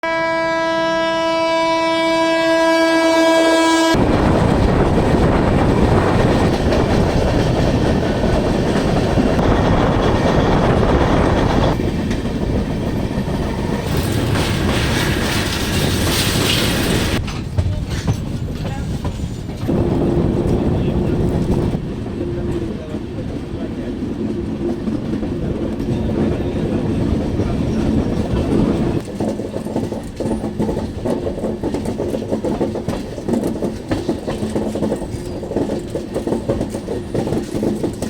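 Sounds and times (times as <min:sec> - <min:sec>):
locomotive horn: 0:00.0 - 0:04.0
train running on rails: 0:00.0 - 0:38.0.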